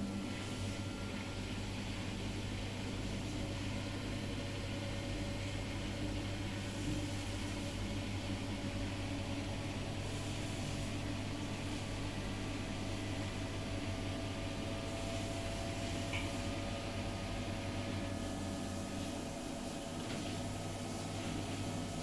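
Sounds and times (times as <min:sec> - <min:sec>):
washing machine humming: 0:00.0 - 0:22.0.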